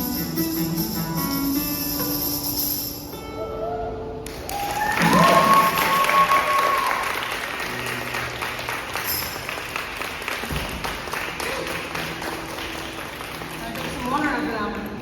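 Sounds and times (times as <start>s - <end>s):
audience applauding: 4.2s - 14.8s.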